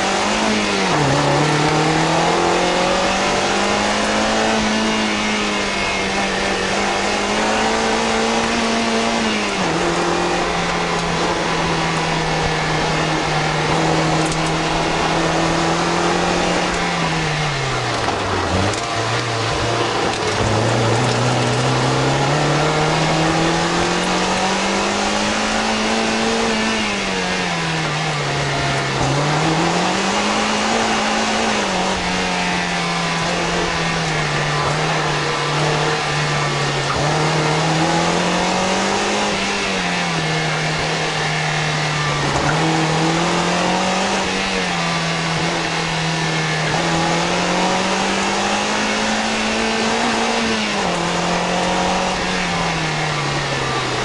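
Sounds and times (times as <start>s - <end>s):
car exhaust revving: 0.0s - 54.0s.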